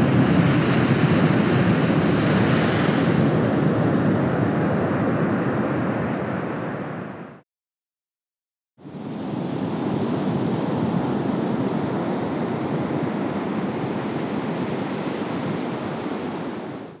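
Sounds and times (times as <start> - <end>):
ocean waves washing ashore: 0.0 - 7.4, 8.8 - 17.0.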